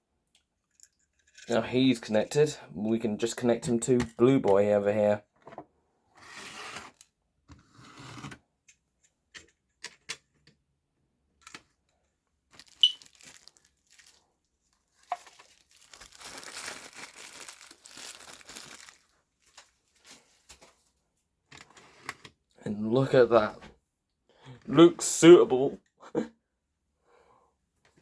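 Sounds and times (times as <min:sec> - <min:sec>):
crinkly rustling: 0:12.5 - 0:21.0.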